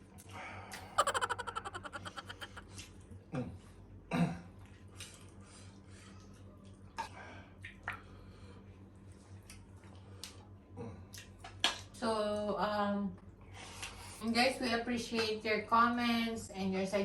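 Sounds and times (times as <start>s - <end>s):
chuckle-like mouth sounds: 0.7s - 2.7s
throat clearing sounds: 0.8s - 2.6s.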